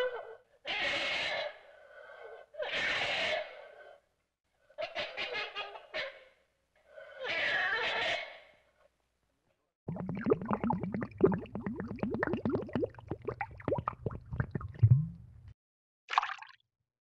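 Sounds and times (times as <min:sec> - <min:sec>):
cartoon bubbling bloops: 0:09.9 - 0:15.3, 0:16.1 - 0:16.6.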